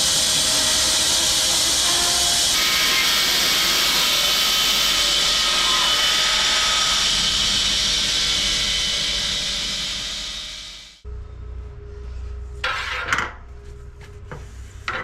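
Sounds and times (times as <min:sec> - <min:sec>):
bandsaw mill cutting: 0:00.0 - 0:11.0
faint hum: 0:06.9 - 0:14.9.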